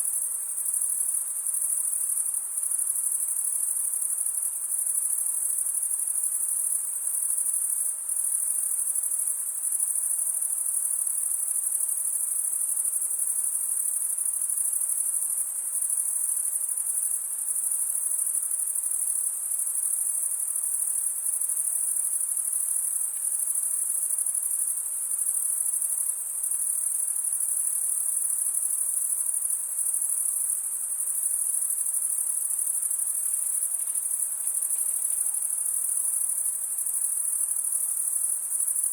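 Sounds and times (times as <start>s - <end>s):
crickets trilling: 14.9s - 38.9s.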